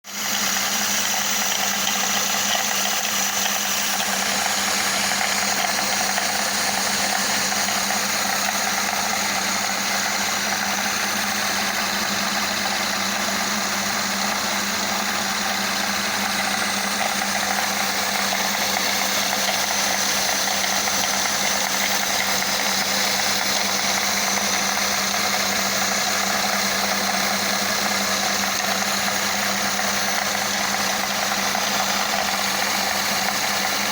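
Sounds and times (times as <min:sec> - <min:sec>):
car engine running: 0:00.0 - 0:33.9.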